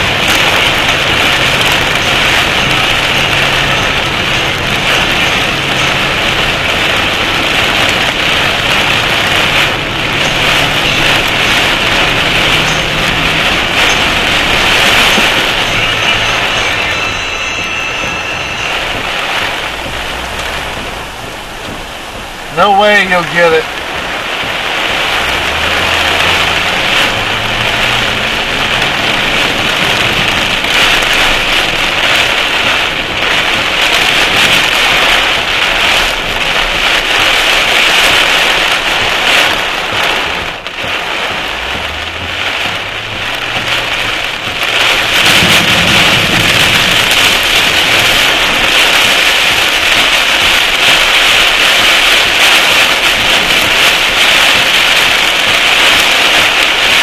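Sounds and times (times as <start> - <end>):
heavy rain hissing: 0.0 - 57.0
vehicle engine rising in pitch: 8.8 - 22.2, 24.8 - 31.0.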